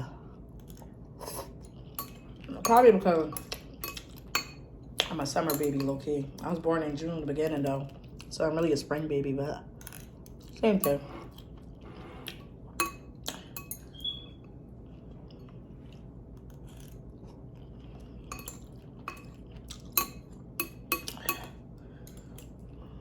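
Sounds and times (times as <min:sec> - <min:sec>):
utensils clinking against a dish: 0:02.0 - 0:06.1, 0:09.9 - 0:14.2, 0:18.2 - 0:22.4.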